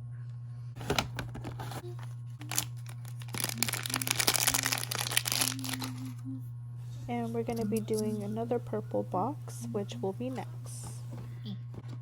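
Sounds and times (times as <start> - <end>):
steady low hum: 0.0 - 12.0
plastic packaging crinkling: 0.8 - 6.2.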